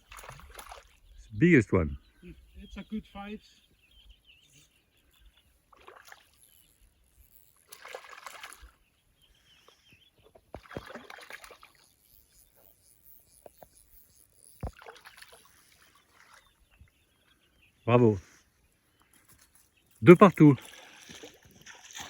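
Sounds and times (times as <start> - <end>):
water splashing and sloshing: 0.0 - 1.0, 5.6 - 6.4, 7.6 - 8.8, 10.2 - 11.9, 14.6 - 16.8, 20.3 - 22.0.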